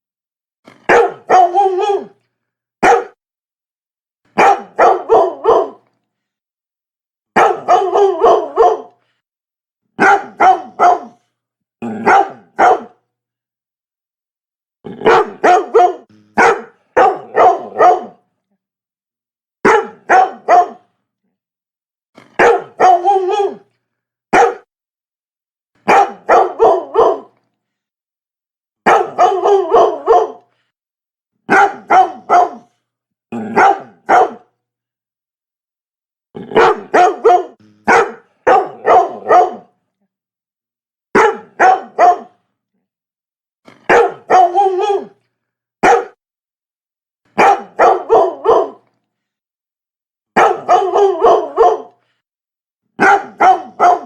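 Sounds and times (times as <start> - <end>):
dog barking: 0.7 - 2.2, 2.8 - 3.2, 4.4 - 5.9, 7.4 - 9.0, 10.0 - 11.3, 12.0 - 13.0, 15.0 - 18.2, 19.6 - 20.9, 22.2 - 23.6, 24.3 - 24.7, 25.8 - 27.4, 28.8 - 30.5, 31.5 - 32.7, 33.4 - 34.6, 36.5 - 39.8, 41.1 - 42.4, 43.7 - 45.2, 45.8 - 46.2, 47.3 - 48.8, 50.4 - 52.1, 53.0 - 54.0.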